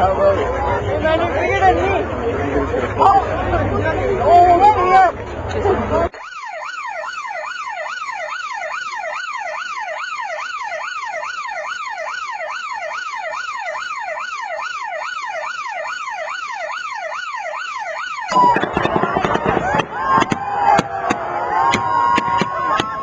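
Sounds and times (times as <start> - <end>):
electronic yelp siren: 6.1 - 23.0.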